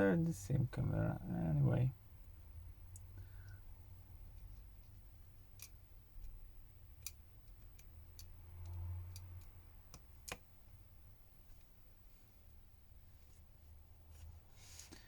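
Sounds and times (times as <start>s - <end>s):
small parts clicking: 5.5s - 6.4s, 7.0s - 10.4s.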